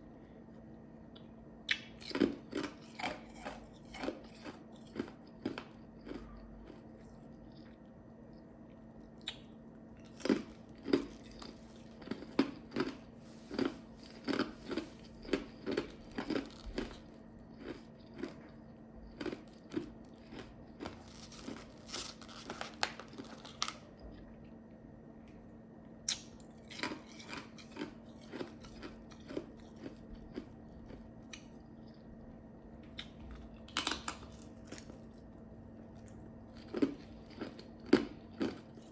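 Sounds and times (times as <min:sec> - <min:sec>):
ice being crunched and chewed: 0:01.7 - 0:24.4, 0:26.1 - 0:32.0, 0:32.9 - 0:38.9
low hum: 0:28.6 - 0:37.3.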